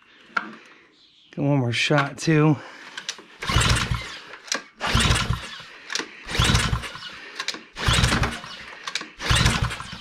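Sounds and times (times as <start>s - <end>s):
small engine pull-start cranking: 2.9s - 10.0s.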